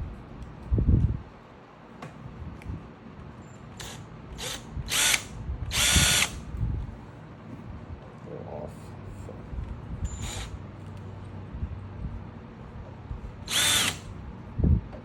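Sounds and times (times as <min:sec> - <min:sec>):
power drill bursts: 0:03.8 - 0:06.4, 0:10.1 - 0:10.5, 0:13.5 - 0:14.1.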